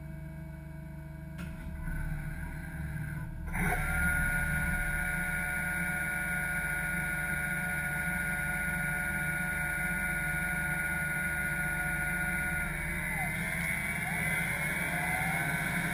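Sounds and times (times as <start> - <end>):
spindle whine: 1.4 - 15.9
lathe humming: 2.6 - 15.9.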